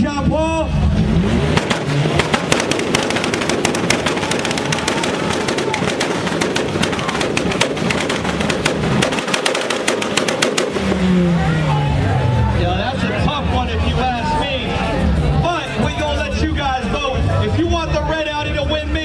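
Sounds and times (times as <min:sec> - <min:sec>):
exhaust popping and crackling: 0:00.0 - 0:14.1
car engine running: 0:00.0 - 0:19.0.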